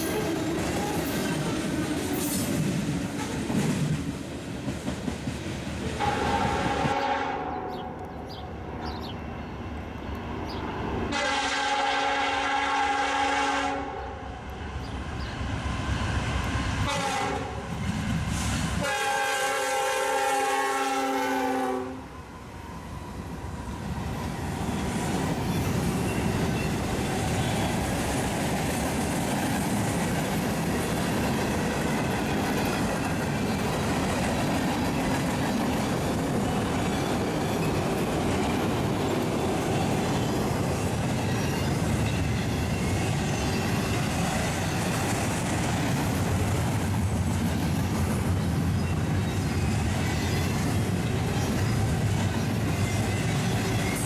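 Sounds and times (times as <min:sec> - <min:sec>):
train rolling past: 0:00.0 - 0:54.0
locomotive air horn blasts: 0:06.0 - 0:07.8, 0:11.1 - 0:14.3, 0:16.9 - 0:17.7, 0:18.8 - 0:22.1.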